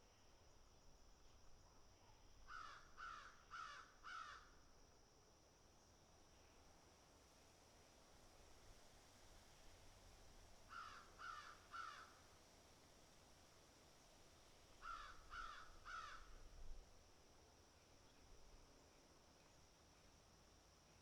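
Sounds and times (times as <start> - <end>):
crow cawing: 2.5 - 4.4, 10.7 - 12.1, 14.8 - 16.3.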